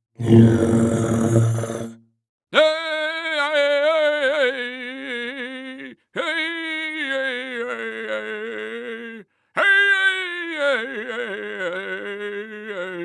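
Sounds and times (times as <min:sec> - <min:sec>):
low rough vocal sound: 0:00.2 - 0:02.0
person singing wordless vowels: 0:00.2 - 0:02.0, 0:02.6 - 0:13.0.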